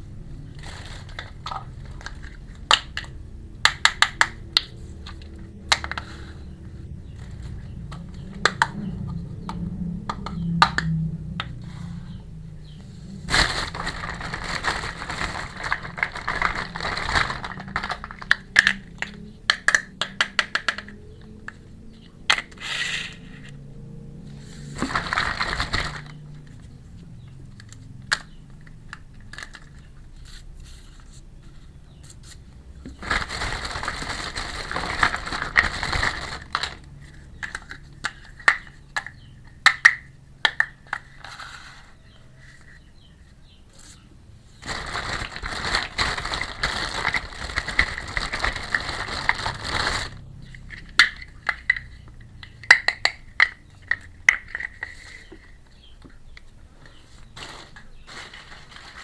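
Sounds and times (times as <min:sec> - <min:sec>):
packaging crinkling: 0:13.2 - 0:19.0, 0:24.7 - 0:26.6, 0:32.9 - 0:37.8, 0:44.6 - 0:51.3, 0:57.4 - 0:59.0
small plastic pieces clicking: 0:13.4 - 0:21.6, 0:27.4 - 0:30.0, 0:44.7 - 0:56.5.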